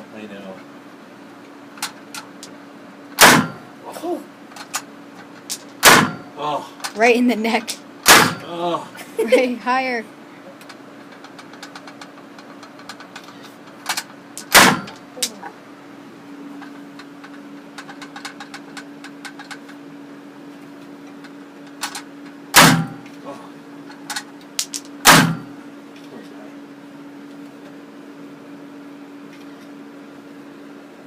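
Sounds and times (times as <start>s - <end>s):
steady hum: 0.0s - 31.0s
gatling gun shots: 3.2s - 3.6s, 5.8s - 6.2s, 8.0s - 8.4s, 14.5s - 15.0s, 22.5s - 23.0s, 25.0s - 25.5s
fainter bangs: 8.0s - 8.5s.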